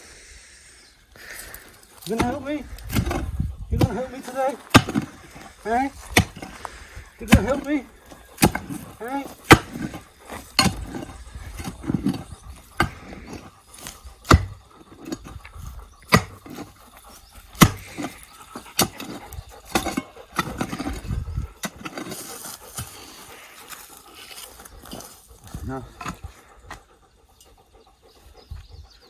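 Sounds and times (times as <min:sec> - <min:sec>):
digging tool striking clay soil: 0:01.3 - 0:15.4, 0:16.0 - 0:16.8, 0:17.5 - 0:25.0.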